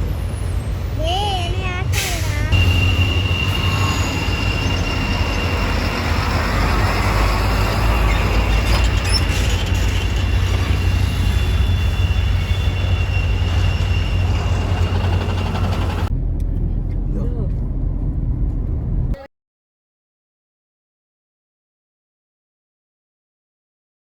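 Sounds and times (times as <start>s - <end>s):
train rumbling on rails: 0.0s - 19.2s
high-pitched wheel squeal: 2.5s - 16.1s.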